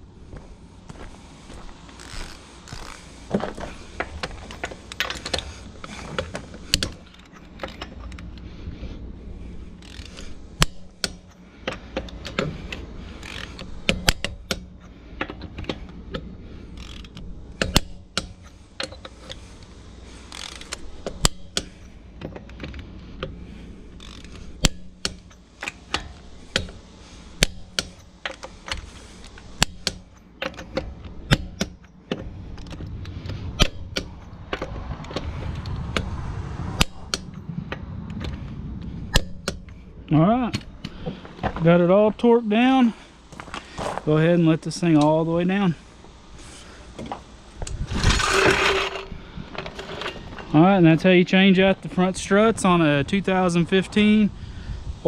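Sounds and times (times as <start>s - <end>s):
torque wrench ratcheting and clicking: 9.8s - 19.5s, 20.3s - 23.3s, 24.0s - 26.8s.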